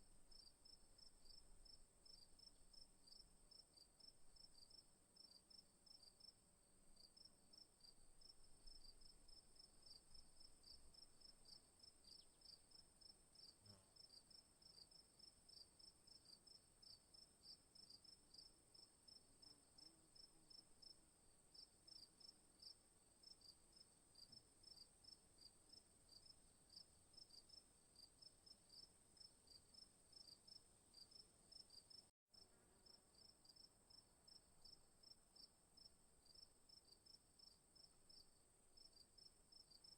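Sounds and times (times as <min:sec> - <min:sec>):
crickets chirping: 0:32.8 - 0:39.9.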